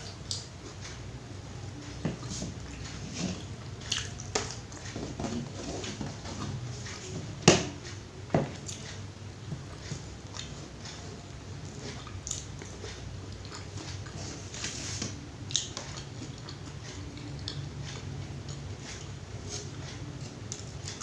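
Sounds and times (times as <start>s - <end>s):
person chewing food: 2.0s - 7.2s, 8.4s - 21.0s.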